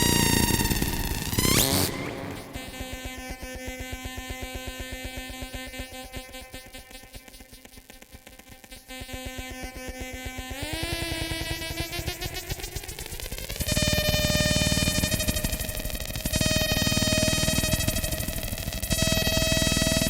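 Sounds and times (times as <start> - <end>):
buzzing synthesizer drone: 0.0 - 4.4, 10.7 - 20.0.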